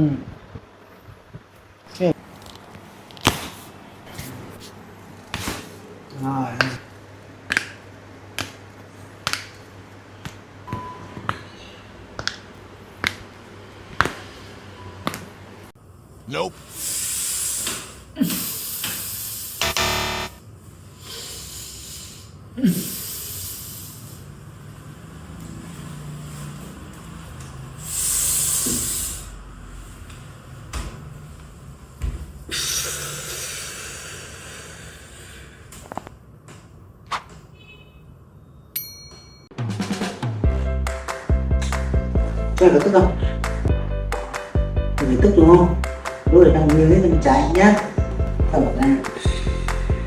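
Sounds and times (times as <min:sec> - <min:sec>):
loud hissing: 0:16.4 - 0:20.2, 0:27.8 - 0:30.4
short beep: 0:19.6 - 0:20.4.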